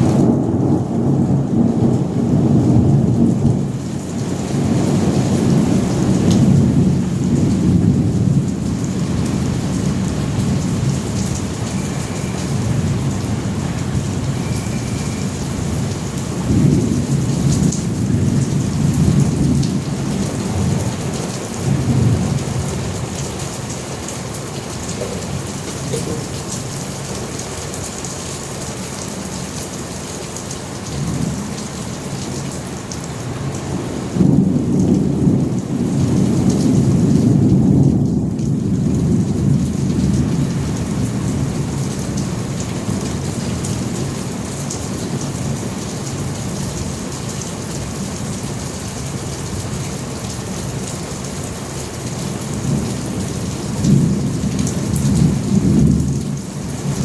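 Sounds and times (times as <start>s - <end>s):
thunder rumbling: 0.0s - 26.8s, 33.7s - 44.1s
steady rain: 0.0s - 57.0s.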